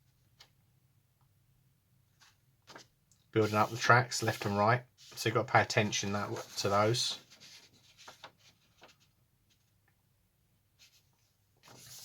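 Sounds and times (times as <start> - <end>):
paper sheet rustling: 2.2 - 9.7, 10.8 - 12.0.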